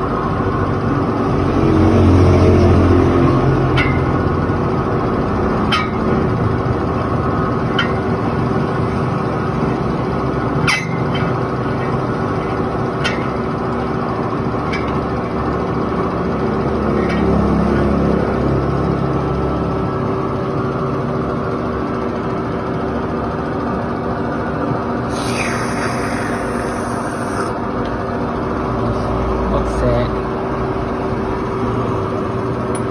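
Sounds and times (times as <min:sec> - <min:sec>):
machine running with low hum: 0:18.2 - 0:29.5.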